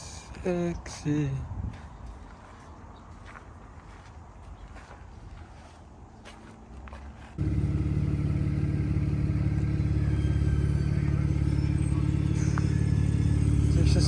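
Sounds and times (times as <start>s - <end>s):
car engine droning: 7.4s - 14.0s.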